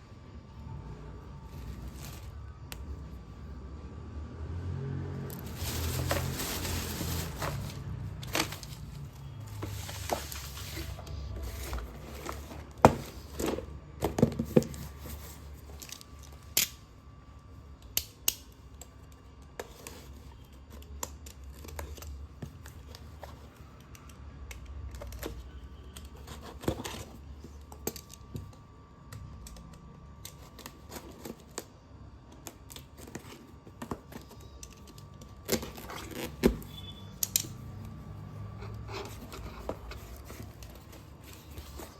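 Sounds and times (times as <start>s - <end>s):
pencils snapping and cracking: 17.8s - 19.2s.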